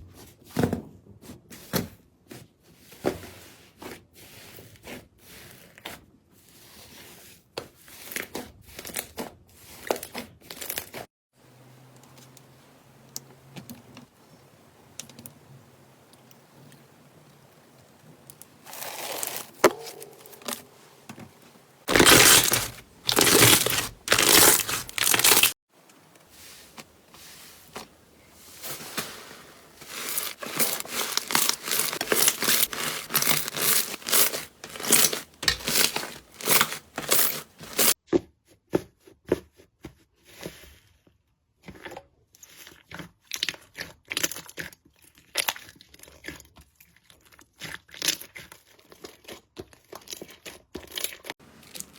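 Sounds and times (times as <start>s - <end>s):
slime crackling and popping: 21.9s - 25.6s, 29.9s - 38.0s.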